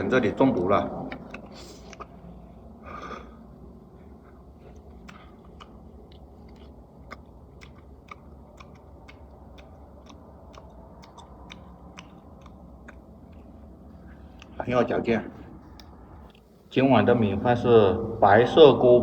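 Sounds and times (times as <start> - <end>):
low steady hum: 0.0 - 19.0
person chewing food: 1.0 - 14.7, 15.4 - 16.6.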